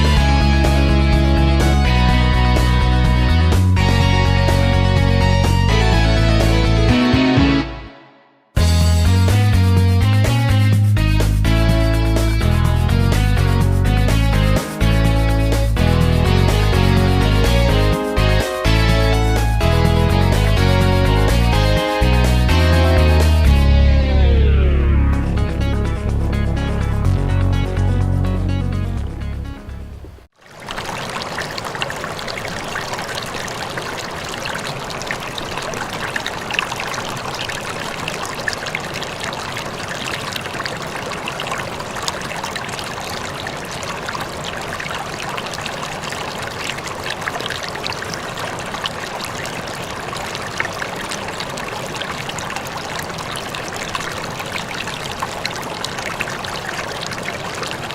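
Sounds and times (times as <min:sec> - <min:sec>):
running water rushing: 0:00.0 - 0:06.6, 0:29.7 - 0:57.9
music: 0:00.0 - 0:30.1.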